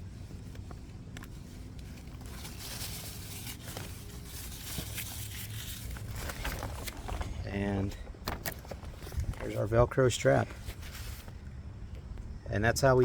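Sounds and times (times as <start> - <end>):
plastic tarp crinkling: 2.1 - 9.8.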